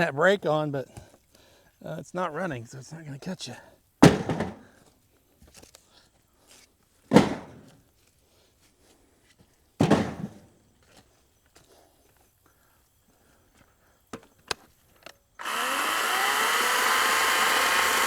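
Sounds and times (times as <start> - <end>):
heavy thuds: 4.0 - 4.7, 7.1 - 7.7, 9.8 - 10.4.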